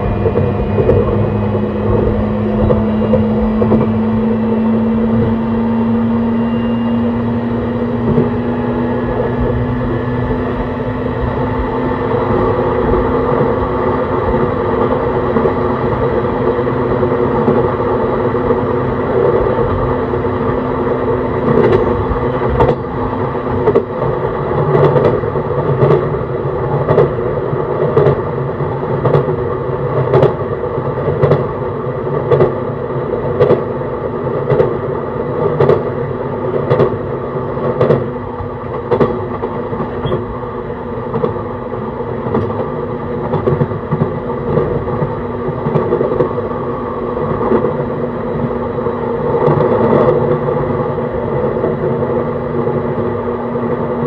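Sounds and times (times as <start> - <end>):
rail-joint clicks: 0.0 - 4.0, 14.3 - 28.3, 28.9 - 46.5
train motor drone: 0.0 - 54.0.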